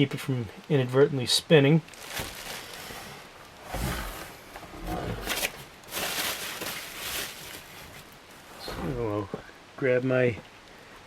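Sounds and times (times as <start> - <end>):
packaging rustling and scraping: 1.9 - 9.4.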